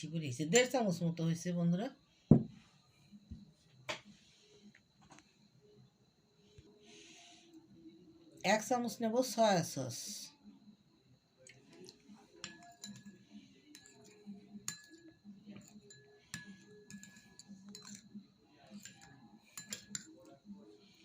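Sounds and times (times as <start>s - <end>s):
metal spoon clinking on dishes: 0.5s - 0.8s, 12.3s - 20.4s.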